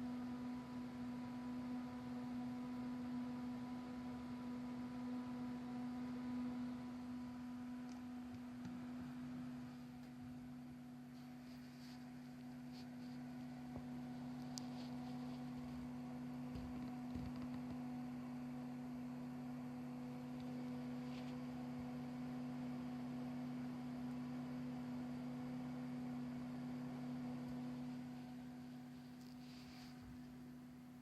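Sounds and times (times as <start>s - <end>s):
cooler fan humming: 0.0s - 31.0s.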